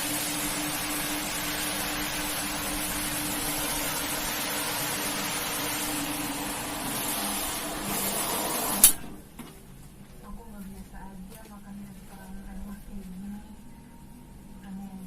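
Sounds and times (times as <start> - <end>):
machine hissing and humming: 0.0 - 9.2.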